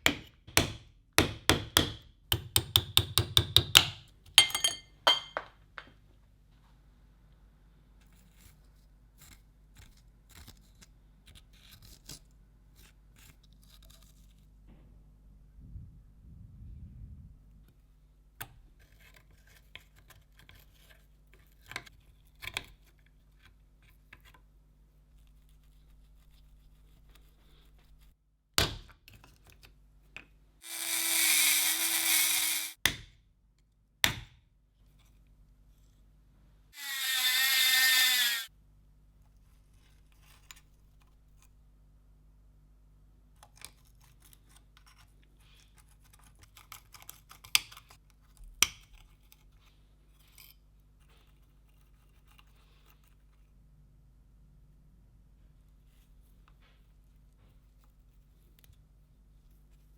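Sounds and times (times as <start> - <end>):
small power tool running: 30.6 - 32.8, 36.8 - 38.5.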